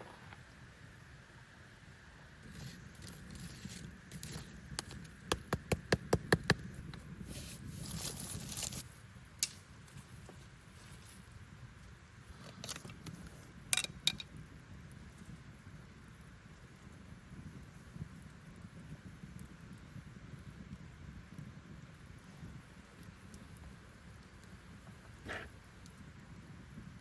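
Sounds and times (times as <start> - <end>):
rustling: 2.4 - 8.9.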